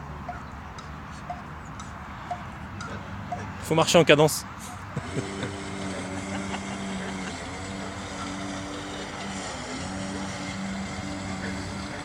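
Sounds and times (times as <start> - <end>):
engine drone over loudspeakers: 4.6 - 12.0.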